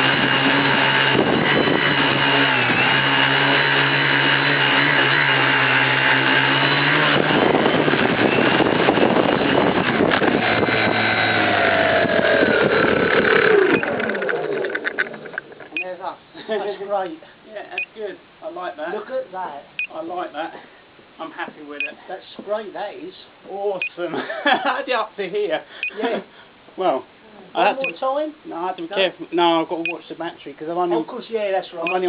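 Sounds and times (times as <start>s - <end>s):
drone motors and propellers buzzing: 0.0s - 15.8s.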